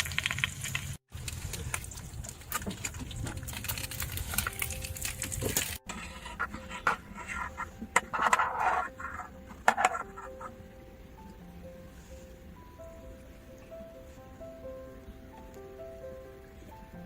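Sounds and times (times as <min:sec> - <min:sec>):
sharp clicks and crackles: 0:00.0 - 0:07.0.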